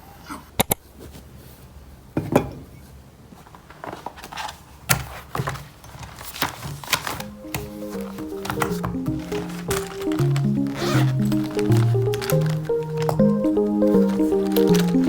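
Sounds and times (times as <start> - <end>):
music: 7.2 - 15.0.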